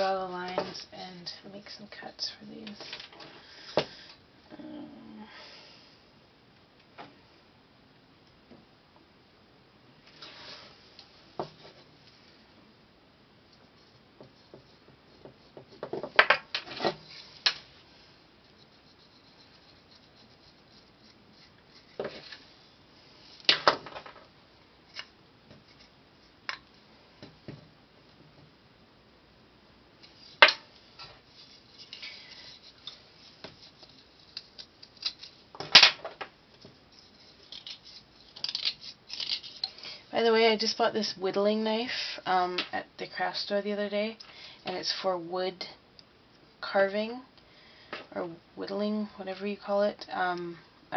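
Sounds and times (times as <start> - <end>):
knife scraping hard material: 18.4 - 22.6, 30.0 - 35.5, 36.9 - 39.7.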